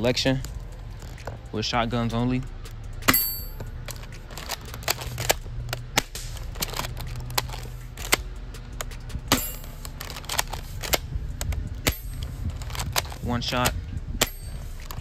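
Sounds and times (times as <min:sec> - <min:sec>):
airsoft shotgun snaps and clicks: 0:04.8 - 0:08.2.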